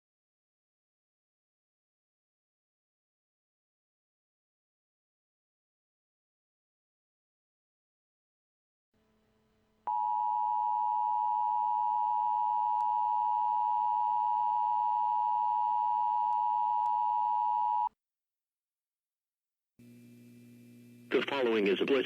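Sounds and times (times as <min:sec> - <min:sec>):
two-tone alarm: 0:09.9 - 0:17.9.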